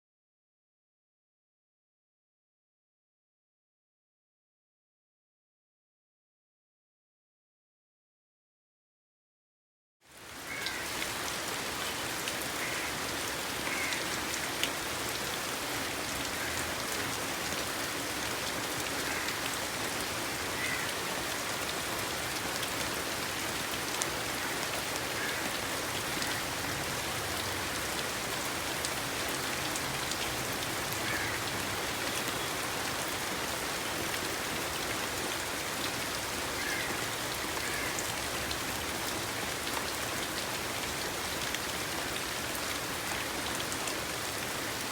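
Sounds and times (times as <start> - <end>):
steady rain falling: 10.0 - 44.9.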